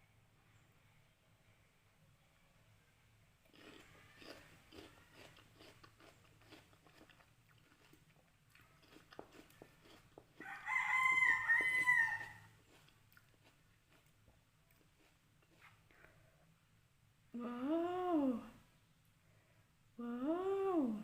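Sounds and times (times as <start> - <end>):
crunchy fruit chewing: 3.4 - 16.1
rooster crowing: 10.4 - 12.6.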